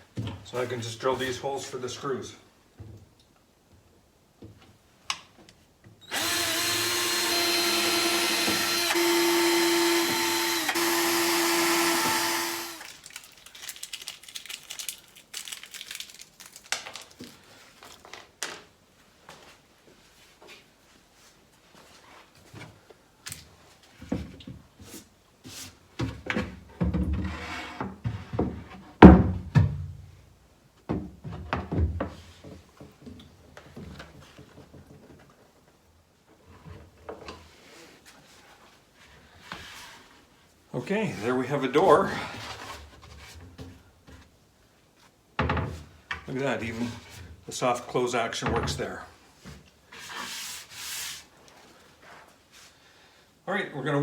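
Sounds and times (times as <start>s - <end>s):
power drill boring into wood: 6.1s - 13.0s.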